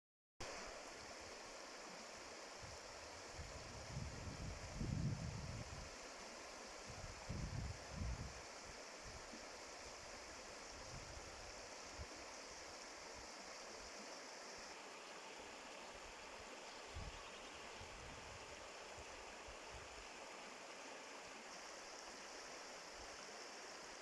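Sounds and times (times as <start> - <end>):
flowing stream rushing: 17.7 - 24.0.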